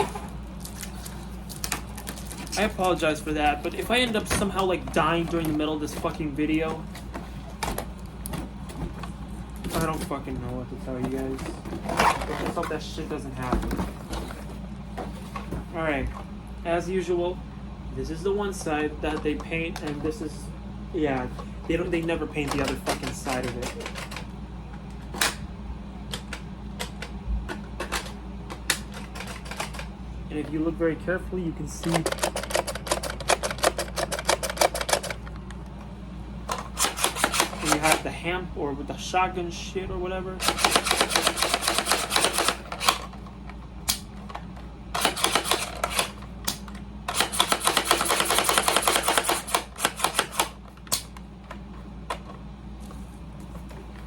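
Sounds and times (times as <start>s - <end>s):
air conditioner humming: 0.0s - 54.0s
plastic and cardboard rattling: 3.7s - 15.7s, 22.4s - 24.3s, 31.8s - 35.6s.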